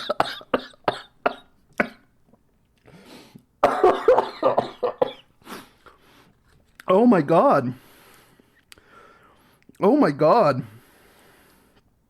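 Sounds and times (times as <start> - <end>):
man coughing: 0.0 - 2.1, 3.6 - 5.4.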